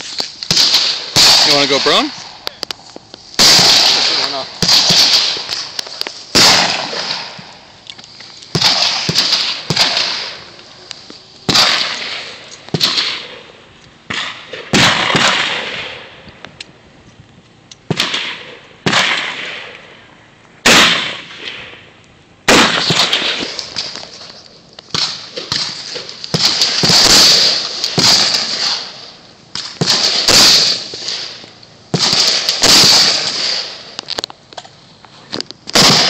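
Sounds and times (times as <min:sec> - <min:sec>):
gunshots echoing: 0:00.5 - 0:02.5, 0:03.4 - 0:07.6, 0:08.5 - 0:10.6, 0:11.5 - 0:16.2, 0:17.9 - 0:20.0, 0:20.6 - 0:21.8, 0:22.5 - 0:24.2, 0:24.9 - 0:34.0, 0:35.7 - 0:36.0.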